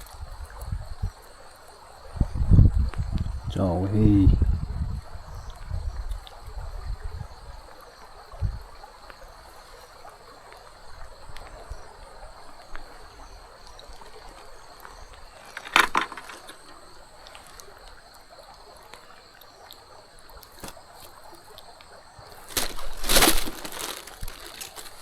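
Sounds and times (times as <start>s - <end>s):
river water running: 7.6s - 25.0s.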